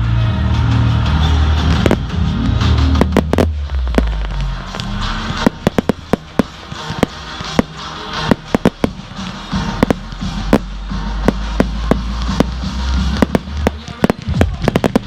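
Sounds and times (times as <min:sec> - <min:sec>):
music with steady bass: 0:00.0 - 0:15.0
fireworks cracking: 0:01.7 - 0:15.0.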